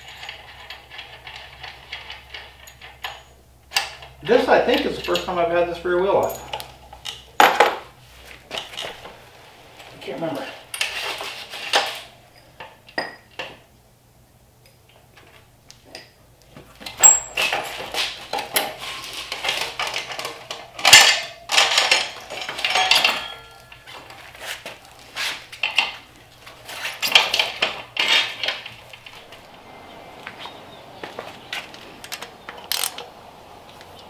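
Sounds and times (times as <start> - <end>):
metal tools clinking and clanking: 0.0 - 7.8, 9.8 - 13.5, 16.8 - 30.4.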